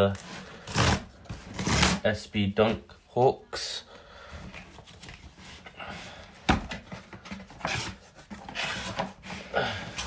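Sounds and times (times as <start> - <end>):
cardboard box and paper rustling: 4.4 - 10.0.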